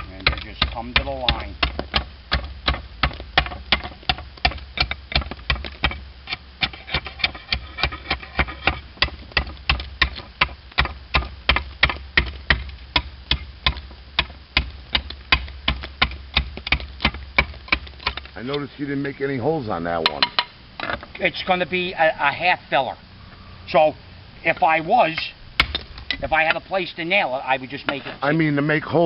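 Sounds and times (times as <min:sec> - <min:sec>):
hammer chopping slate: 0:00.2 - 0:06.0, 0:06.6 - 0:18.3.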